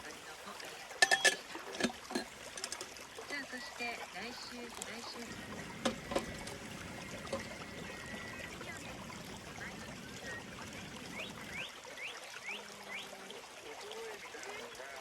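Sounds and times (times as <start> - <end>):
small stream babbling: 0.0 - 15.0
bird chirping: 5.1 - 13.1.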